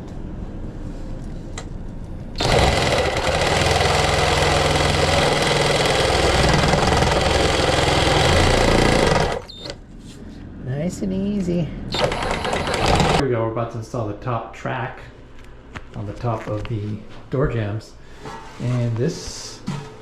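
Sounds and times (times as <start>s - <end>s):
power saw cutting metal: 2.4s - 9.5s, 12.0s - 13.2s.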